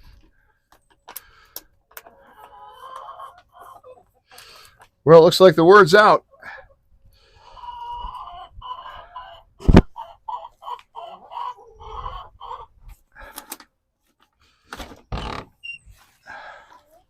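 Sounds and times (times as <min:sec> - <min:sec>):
hens clucking: 0:00.1 - 0:05.0, 0:05.6 - 0:13.7.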